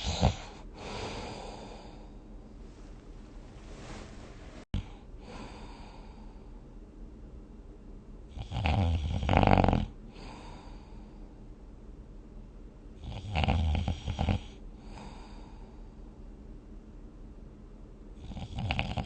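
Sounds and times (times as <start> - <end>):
person snoring: 0.0 - 2.1, 8.4 - 10.9, 13.0 - 15.6, 18.2 - 19.0
soft breath: 0.7 - 6.6, 10.1 - 11.4, 14.8 - 16.2.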